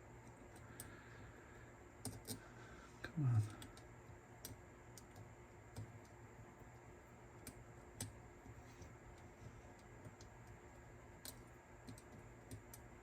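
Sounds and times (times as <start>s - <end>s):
low background hum: 0.0s - 13.0s
small mechanism parts clicking: 2.0s - 2.4s, 11.2s - 12.9s.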